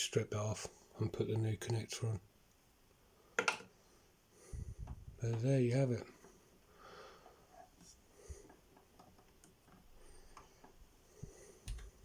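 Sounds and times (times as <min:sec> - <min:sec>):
faint small clicks and rustles: 0:07.2 - 0:12.0.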